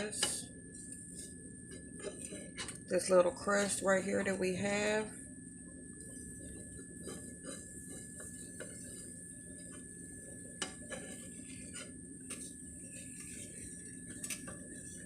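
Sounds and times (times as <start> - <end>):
faint steady hum: 0.0 - 15.0
utensil tapping a skillet: 6.0 - 15.0.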